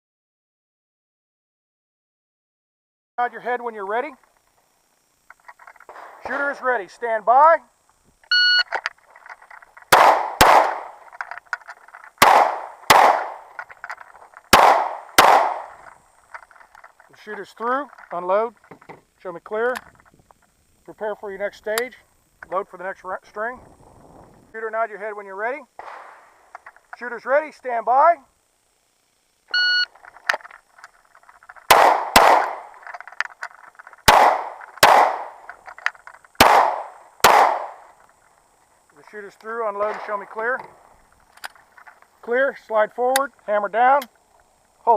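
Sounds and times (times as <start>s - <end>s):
pistol shots echoing: 9.9s - 11.0s, 12.2s - 13.5s, 14.5s - 15.8s, 31.7s - 32.8s, 34.0s - 35.4s, 36.4s - 37.9s.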